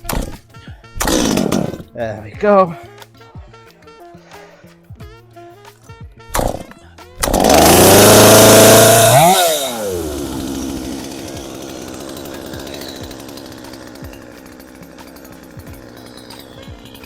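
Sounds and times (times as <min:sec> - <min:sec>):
chainsaw starting and idling: 0:00.0 - 0:03.0, 0:06.3 - 0:17.0.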